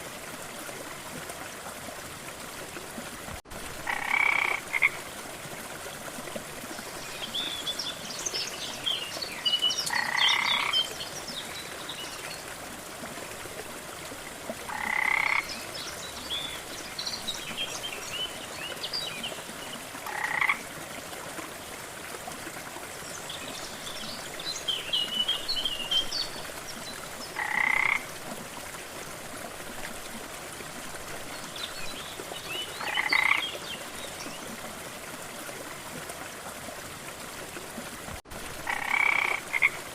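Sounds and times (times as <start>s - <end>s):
frogs croaking: 3.8s - 5.0s, 9.8s - 11.0s, 14.6s - 15.6s, 20.0s - 20.7s, 27.3s - 28.1s, 32.8s - 33.6s, 38.6s - 39.8s.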